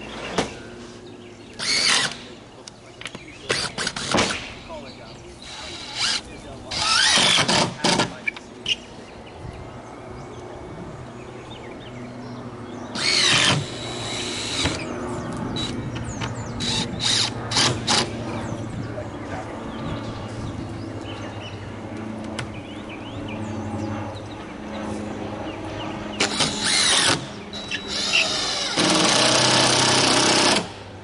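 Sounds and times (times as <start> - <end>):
steady low hum: 0.0 - 31.0
power tool running: 1.5 - 2.3, 5.4 - 8.2, 12.9 - 18.3, 26.1 - 30.9.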